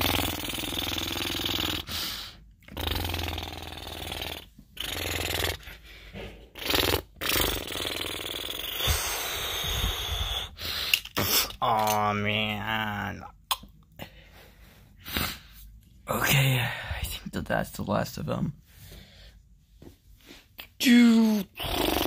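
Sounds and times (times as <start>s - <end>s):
person making mouth sound effects: 0.0s - 5.8s, 6.5s - 10.6s, 11.2s - 13.8s, 20.6s - 22.0s.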